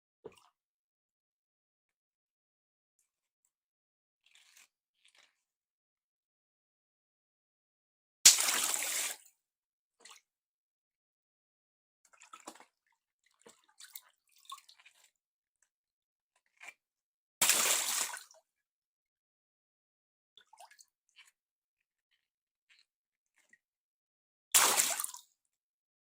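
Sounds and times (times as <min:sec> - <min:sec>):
water splashing: 0:24.6 - 0:25.2.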